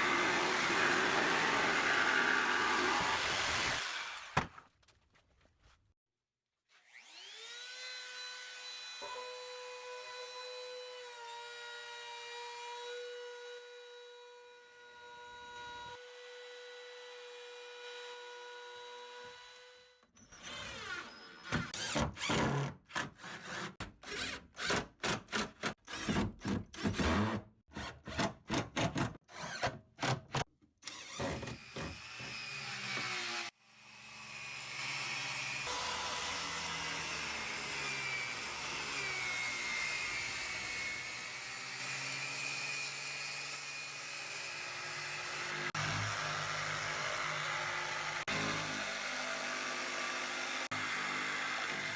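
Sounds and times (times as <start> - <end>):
power tool running: 0.0 - 4.4, 30.8 - 51.9.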